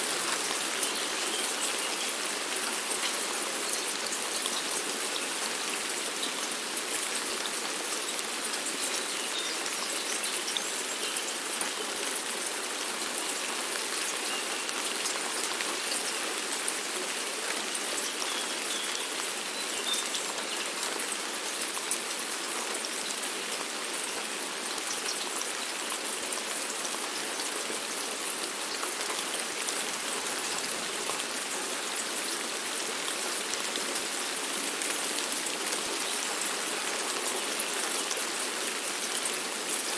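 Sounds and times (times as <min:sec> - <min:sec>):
steady rain pattering: 0:00.0 - 0:39.9.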